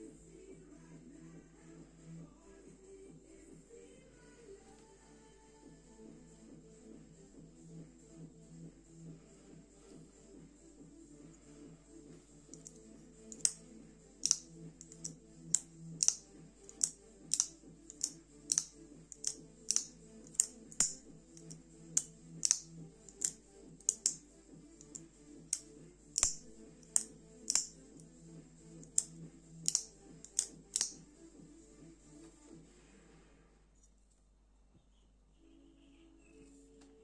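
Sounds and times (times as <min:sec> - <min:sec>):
quiet background music: 0:00.0 - 0:37.0
folding knife lock clicking: 0:12.6 - 0:13.6, 0:14.2 - 0:24.2, 0:26.2 - 0:27.7, 0:28.8 - 0:31.0.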